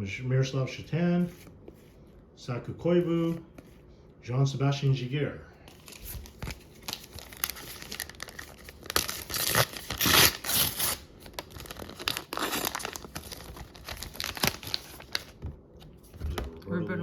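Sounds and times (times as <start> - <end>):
cards rustling and clicking: 5.7 - 16.5
wrapper tearing and crinkling: 5.8 - 15.4.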